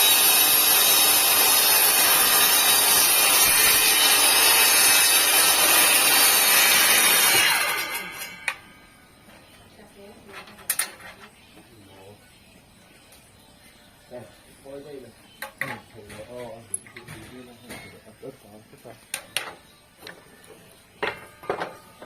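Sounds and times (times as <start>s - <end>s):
table saw running: 0.0s - 8.6s.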